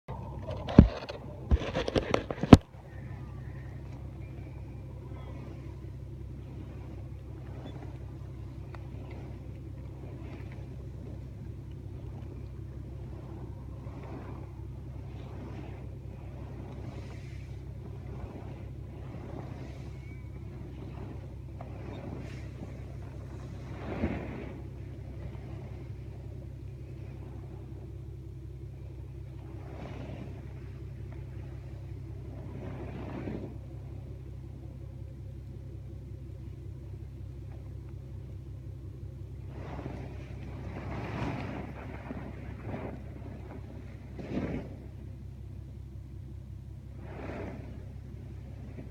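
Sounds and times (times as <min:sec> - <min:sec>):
wind buffeting microphone: 0:00.1 - 0:48.9
faint ticks: 0:08.7 - 0:09.6.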